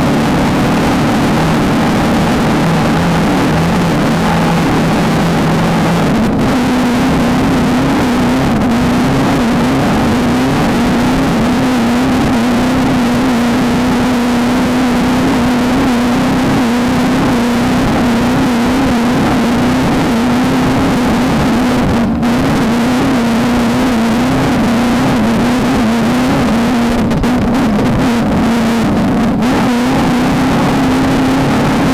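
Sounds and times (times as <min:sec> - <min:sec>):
loud rushing noise: 0:00.0 - 0:23.4
race car engine at high revs: 0:00.0 - 0:31.9.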